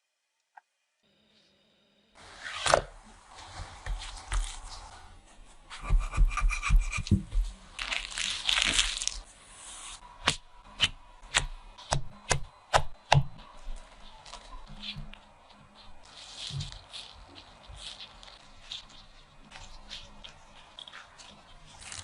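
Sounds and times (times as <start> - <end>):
crackling and crinkling: 2.6 - 11.5, 13.4 - 22.0
rustling: 13.5 - 22.0.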